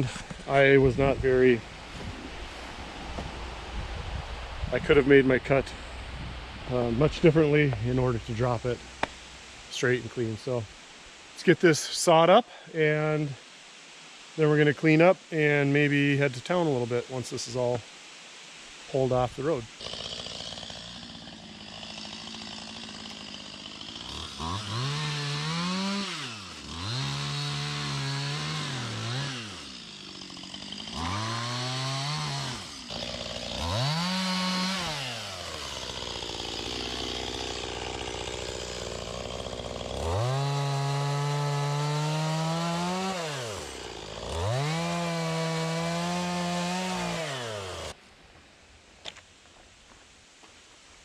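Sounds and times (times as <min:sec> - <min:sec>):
chainsaw revving and idling: 0:04.8 - 0:09.7, 0:19.6 - 0:48.0.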